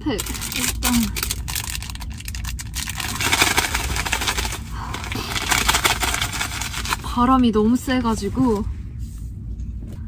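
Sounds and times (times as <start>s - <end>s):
packet crinkling and rustling: 0.0s - 7.4s.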